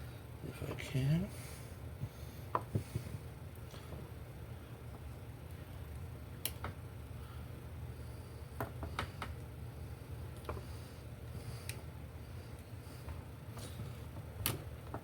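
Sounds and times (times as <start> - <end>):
steady low hum: 0.0 - 15.0
small clicks from wire connectors: 5.5 - 6.8.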